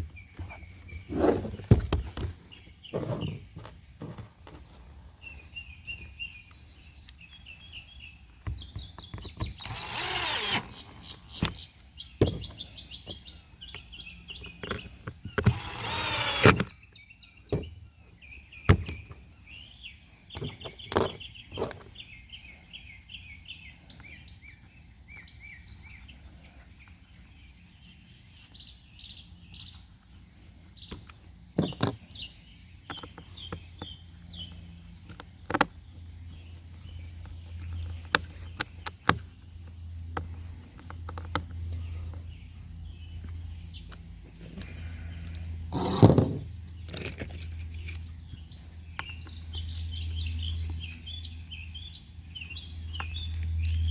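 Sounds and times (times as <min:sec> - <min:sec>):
small birds chirping: 0:00.0 - 0:53.9
short whirring bursts: 0:09.6 - 0:11.6, 0:15.4 - 0:16.7.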